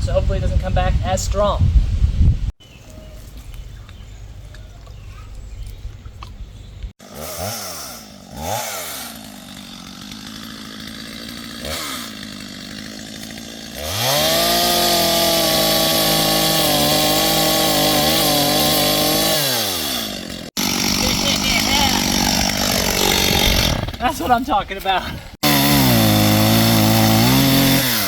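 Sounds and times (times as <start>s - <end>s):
chainsaw engine idling and revving: 6.9s - 24.5s, 25.1s - 28.0s.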